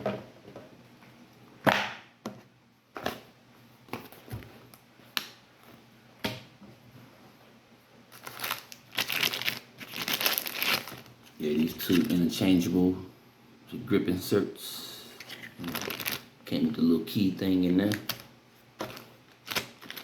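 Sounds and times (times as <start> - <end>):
packaging crinkling: 8.1 - 12.4, 15.2 - 16.3, 17.7 - 20.0.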